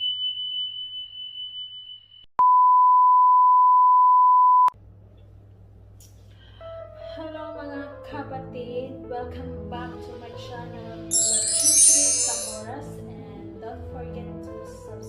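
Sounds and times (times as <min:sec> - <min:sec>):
high electronic tone: 0:11.1 - 0:12.6.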